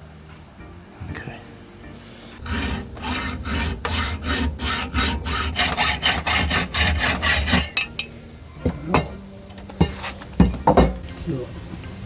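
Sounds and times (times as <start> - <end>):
hand tool rasping metal: 2.4 - 8.1, 9.8 - 11.0.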